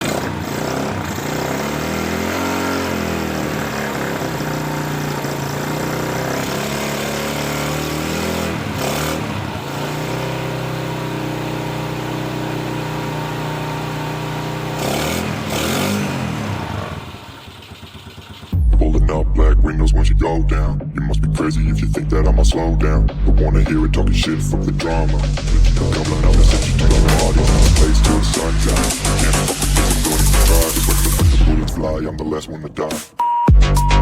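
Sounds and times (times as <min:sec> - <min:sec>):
motorcycle engine idling: 0:00.1 - 0:07.7, 0:08.5 - 0:18.7.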